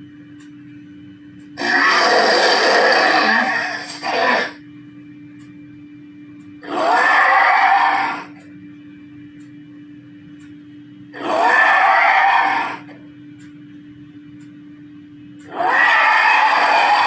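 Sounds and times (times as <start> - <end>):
faint steady hum: 0.0 - 17.0
harsh screaming dragon roars: 1.6 - 4.6, 6.6 - 8.4, 11.1 - 13.0, 15.4 - 17.0.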